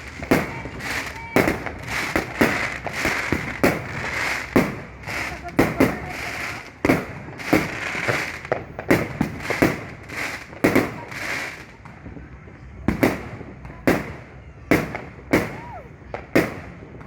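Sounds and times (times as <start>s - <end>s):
fireworks fizzing hiss: 0.0s - 11.8s
fireworks banging: 0.0s - 17.0s.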